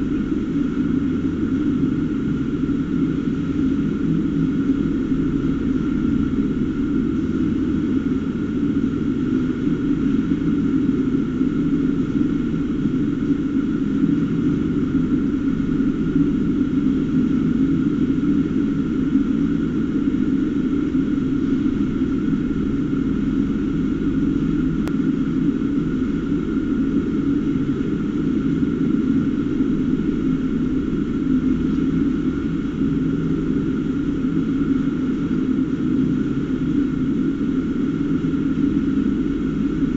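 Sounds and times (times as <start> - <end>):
steady mechanical drone: 0.0 - 39.9.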